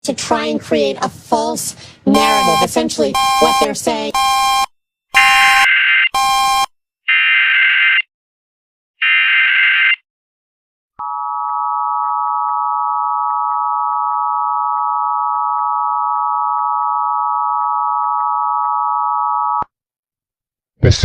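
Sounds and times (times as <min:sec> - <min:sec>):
two-tone alarm chord: 0:02.1 - 0:06.6.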